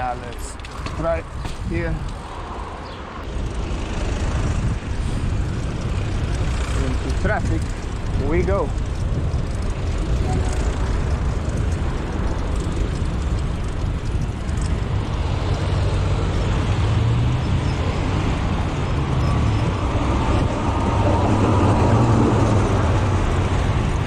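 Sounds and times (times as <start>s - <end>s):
car and bus engines rumbling: 0.0s - 24.0s.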